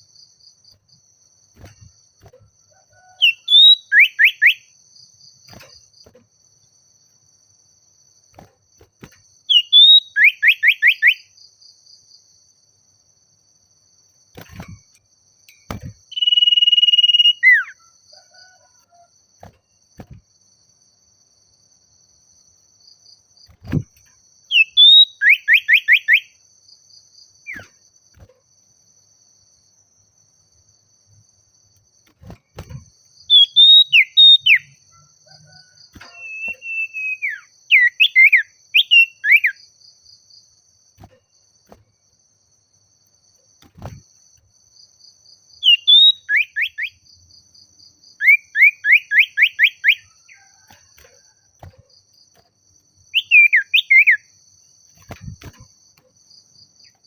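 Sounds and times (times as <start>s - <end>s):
bird whistling calls: 3.2s - 4.6s, 9.5s - 11.2s, 16.1s - 17.8s, 24.5s - 26.3s, 33.3s - 34.7s, 36.0s - 39.6s, 45.6s - 46.9s, 48.2s - 50.1s, 53.2s - 54.2s.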